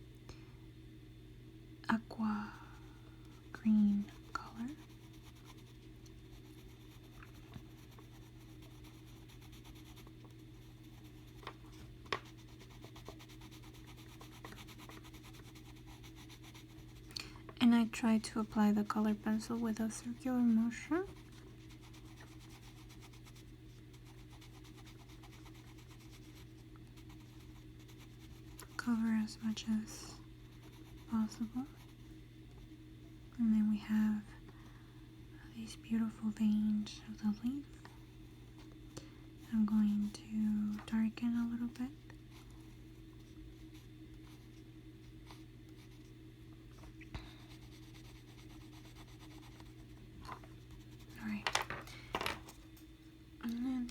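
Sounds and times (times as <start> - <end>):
steady low hum: 0.0 - 53.9
colored pencil scratching on paper: 3.7 - 17.1, 18.3 - 32.1, 47.4 - 51.6.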